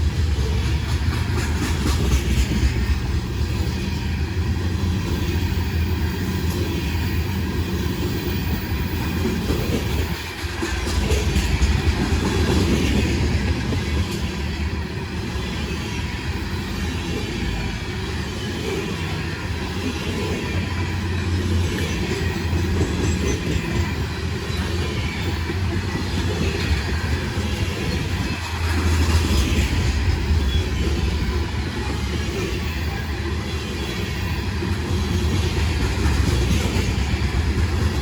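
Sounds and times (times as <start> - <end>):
wheels clicking over rail joints: 0.0 - 3.4, 8.8 - 14.4
freight train rumbling on rails: 0.0 - 38.0.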